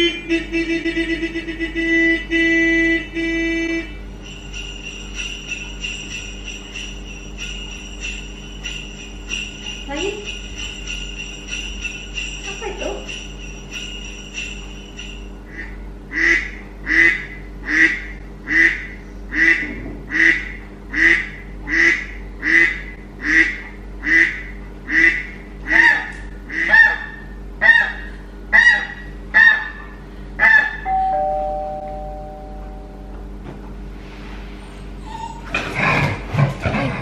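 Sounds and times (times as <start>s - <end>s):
steady tone dropping in pitch: 30.8s - 33.3s.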